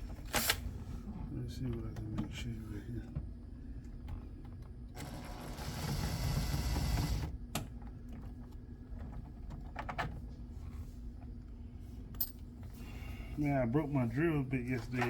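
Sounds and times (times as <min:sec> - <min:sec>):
electric drill running: 0:05.0 - 0:07.3.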